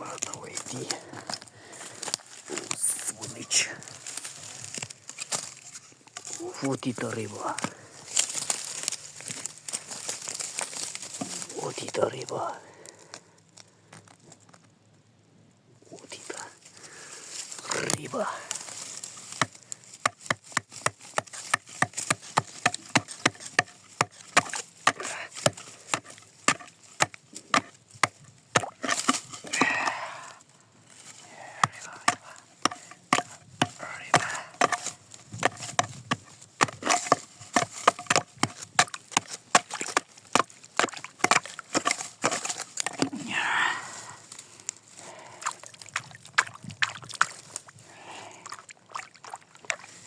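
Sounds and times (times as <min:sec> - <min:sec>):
sharp knocks on ice: 0:19.3 - 0:29.8, 0:31.6 - 0:43.1.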